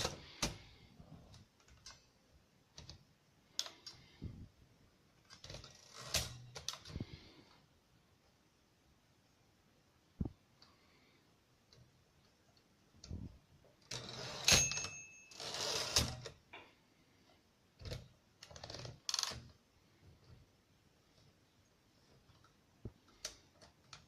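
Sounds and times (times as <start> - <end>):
typewriter carriage sliding clatter: 13.9 - 16.3
typewriter bell ring: 14.0 - 16.2.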